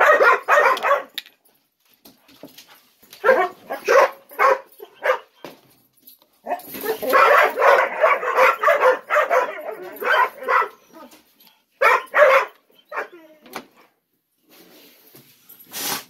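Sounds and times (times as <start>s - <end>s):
puppies barking and yipping: 0.0s - 1.2s, 3.2s - 5.6s, 6.4s - 11.2s, 11.8s - 13.3s.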